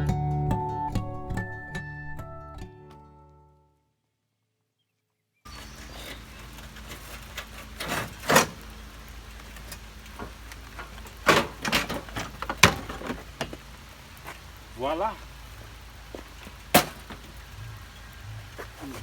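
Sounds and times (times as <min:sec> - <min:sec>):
clicks and knocks of trim parts: 0:06.0 - 0:13.6.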